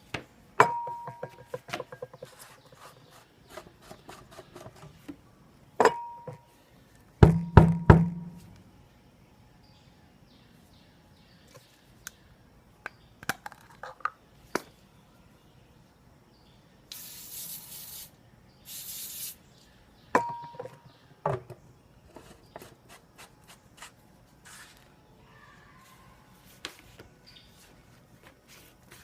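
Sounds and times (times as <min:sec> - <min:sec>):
aerosol can spraying: 0:16.9 - 0:18.1, 0:18.7 - 0:19.4.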